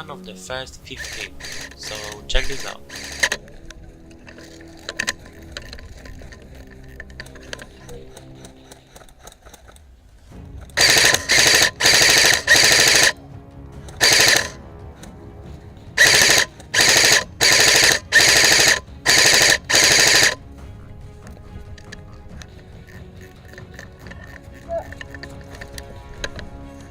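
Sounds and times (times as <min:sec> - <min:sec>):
airsoft gun firing bursts: 0:01.0 - 0:03.5, 0:10.8 - 0:13.2, 0:14.0 - 0:14.6, 0:16.0 - 0:20.4.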